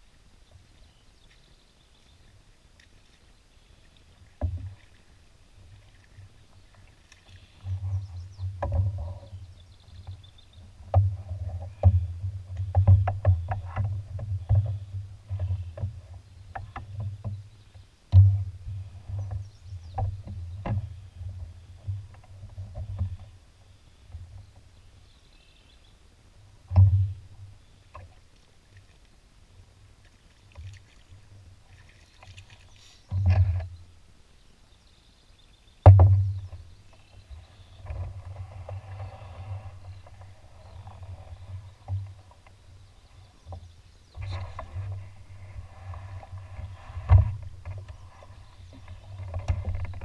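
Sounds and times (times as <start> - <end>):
water slapping against canoe hull: 3.8 - 23.4, 30.0 - 33.8, 35.8 - 42.6, 43.4 - 50.0.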